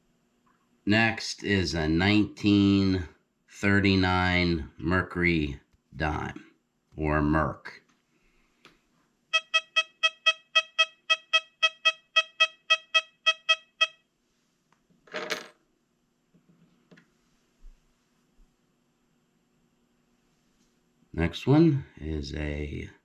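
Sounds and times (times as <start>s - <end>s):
metal detector beeping: 9.3s - 14.0s.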